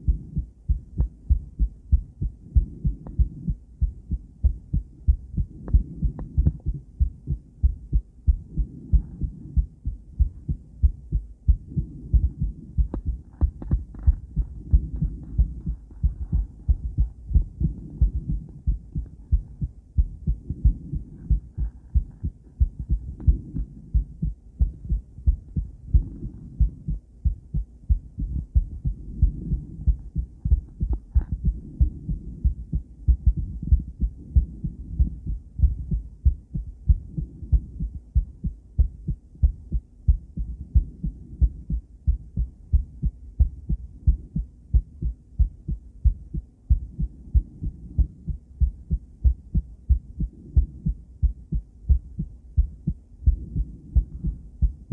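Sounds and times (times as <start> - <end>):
heartbeat thumps: 0.0 - 54.9
low hum: 0.0 - 54.9.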